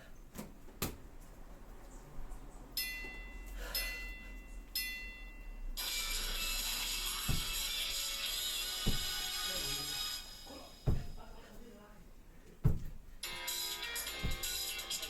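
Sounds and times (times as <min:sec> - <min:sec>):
background music: 0:05.8 - 0:11.0, 0:13.2 - 0:15.0.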